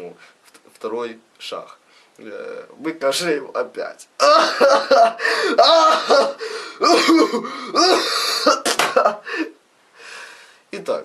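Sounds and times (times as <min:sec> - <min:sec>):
man coughing: 0:04.2 - 0:09.5.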